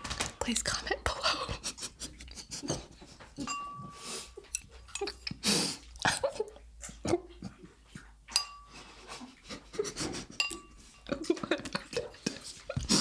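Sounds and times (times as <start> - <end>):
utensil clinking against bowl: 2.6 - 5.3, 8.3 - 8.8, 10.4 - 12.5
chewing: 4.4 - 13.0.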